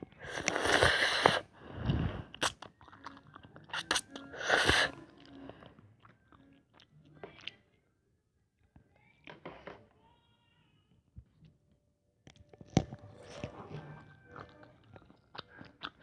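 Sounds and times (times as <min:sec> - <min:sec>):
chewing: 0:00.1 - 0:07.6, 0:12.3 - 0:16.0
noodles slurped: 0:00.2 - 0:05.7.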